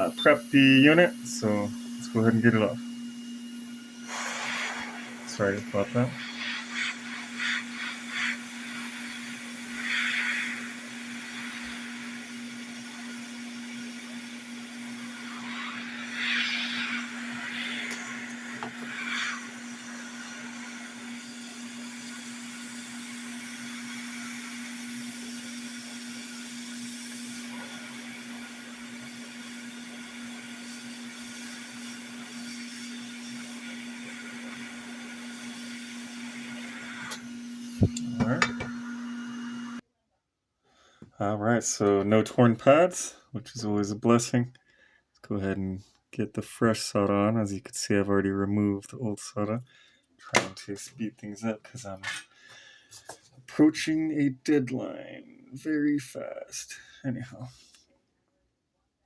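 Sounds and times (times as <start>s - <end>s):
hot air station blowing hum: 0.0s - 39.8s.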